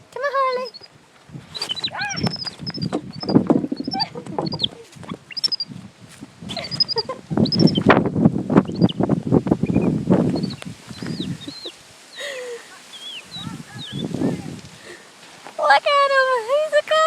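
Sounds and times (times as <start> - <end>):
crunching footsteps on ground: 0.8 - 8.3, 9.0 - 11.9, 12.7 - 17.0
monkey chirping and squealing: 1.5 - 5.8, 6.6 - 7.9, 8.6 - 9.0, 9.6 - 12.2, 12.9 - 14.2.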